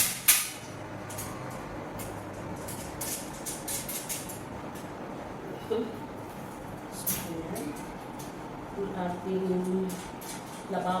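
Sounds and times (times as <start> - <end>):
sink parts clicking and rustling: 0.0 - 4.8
steady low hum: 0.0 - 11.0.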